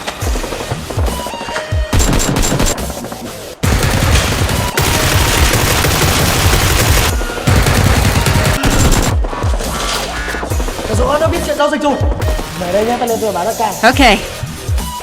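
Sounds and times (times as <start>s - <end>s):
automatic gunfire: 1.9s - 9.2s.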